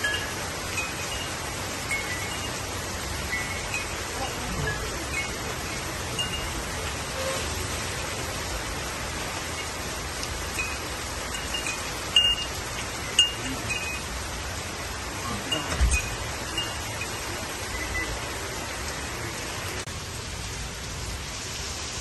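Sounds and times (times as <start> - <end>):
heavy rain falling: 0.0 - 22.0.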